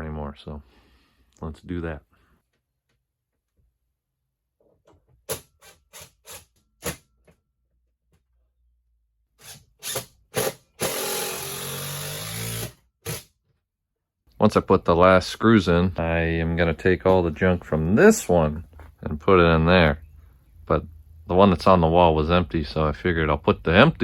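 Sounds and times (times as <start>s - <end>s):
power drill driving a screw: 5.3s - 7.0s, 9.4s - 13.3s.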